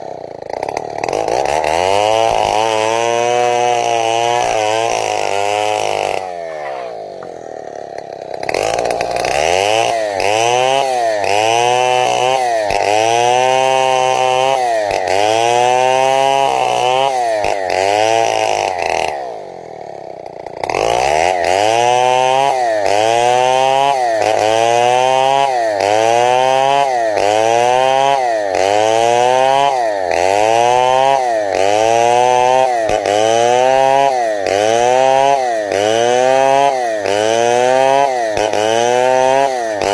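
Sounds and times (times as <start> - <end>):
chainsaw cutting a log: 0.0 - 39.9.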